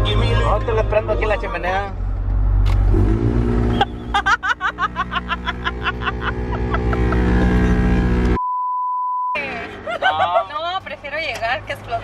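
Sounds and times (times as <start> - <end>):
music playing: 0.0 - 2.2
vehicle cabin drone: 0.0 - 8.5
high-pitched censor bleep: 8.4 - 9.4.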